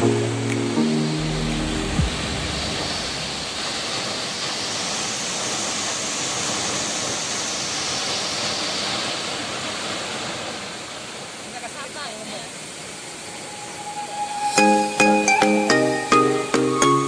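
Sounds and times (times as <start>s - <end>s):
background music: 0.0s - 3.5s, 13.2s - 17.0s
waterfall rushing: 0.0s - 17.0s.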